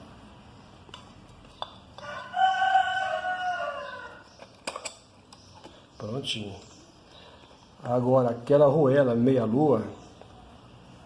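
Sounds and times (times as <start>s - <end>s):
rooster crowing: 2.0s - 4.4s.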